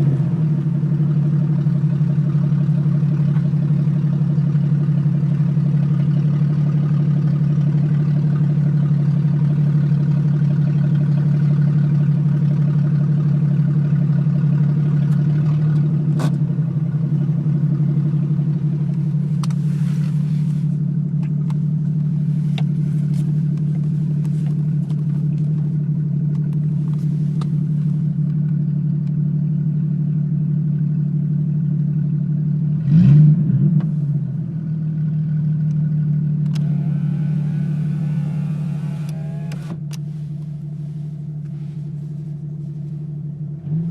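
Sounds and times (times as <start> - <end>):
loud car exhaust revving: 32.6 - 34.7, 36.5 - 43.9.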